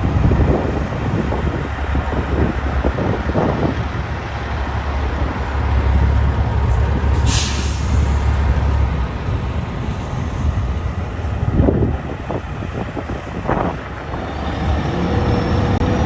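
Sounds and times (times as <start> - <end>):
truck diesel engine rumbling: 0.0 - 16.0
air-brake hiss: 7.2 - 8.4.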